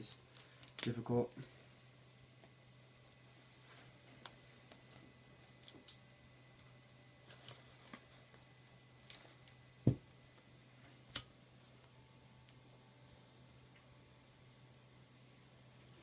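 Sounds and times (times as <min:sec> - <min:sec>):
faint steady hum: 0:00.0 - 0:16.0
dull thump: 0:09.8 - 0:10.0.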